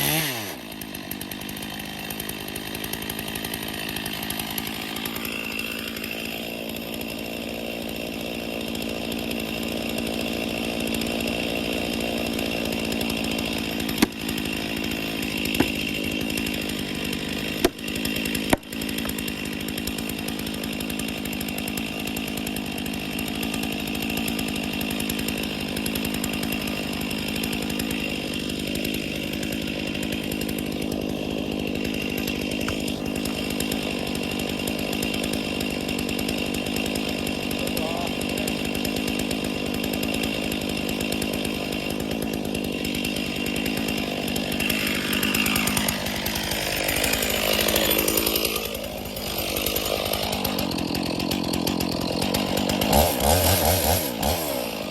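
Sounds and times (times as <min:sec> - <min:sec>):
chainsaw cutting tree: 0:00.0 - 0:54.9.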